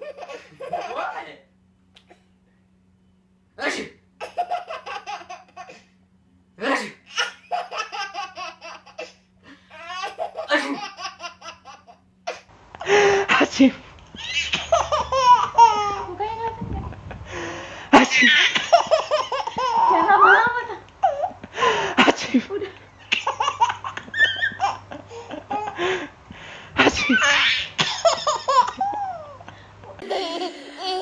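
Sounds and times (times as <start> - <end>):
baby laughing: 0.0 - 1.2, 4.2 - 5.9, 7.1 - 12.4, 14.1 - 16.2, 18.0 - 21.4, 23.0 - 25.8, 26.8 - 31.0.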